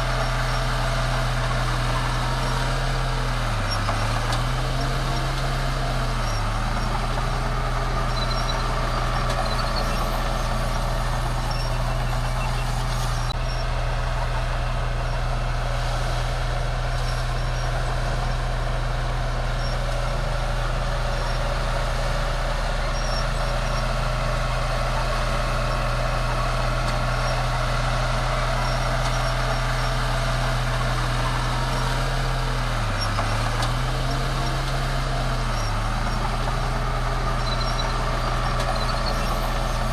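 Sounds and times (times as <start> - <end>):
bulldozer diesel engine running: 0.0 - 39.9.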